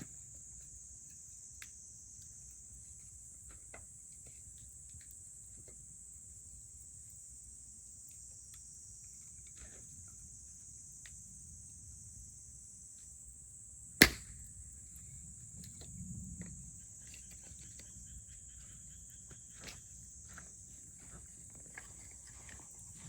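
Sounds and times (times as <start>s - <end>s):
campfire crackling and popping: 14.0s - 14.4s.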